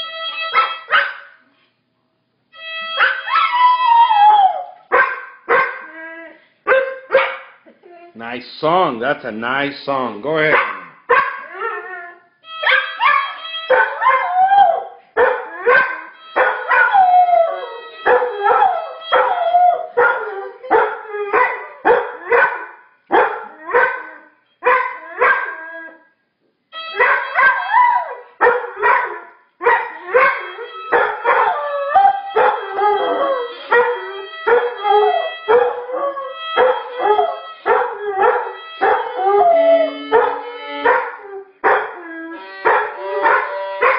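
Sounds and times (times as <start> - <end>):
music: 0.0 - 0.9, 2.5 - 3.3, 12.4 - 14.0, 15.8 - 20.0, 26.7 - 27.8, 30.0 - 41.2, 42.3 - 43.9
dog howling: 3.0 - 4.8, 10.6 - 26.0, 26.9 - 43.9.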